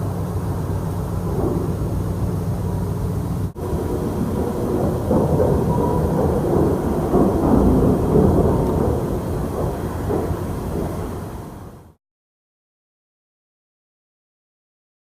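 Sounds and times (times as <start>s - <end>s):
low rumbling from the sky: 0.0s - 12.0s.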